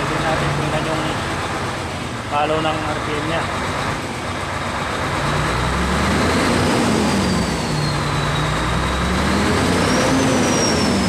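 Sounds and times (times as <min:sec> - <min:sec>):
diesel truck engine revving: 0:00.0 - 0:11.0.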